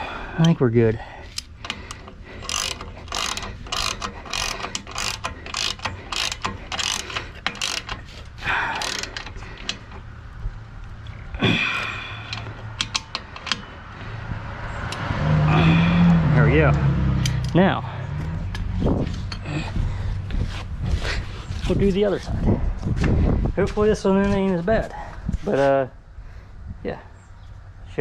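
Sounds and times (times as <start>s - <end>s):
ratchet wrench clicking: 1.3s - 10.2s, 12.2s - 13.8s.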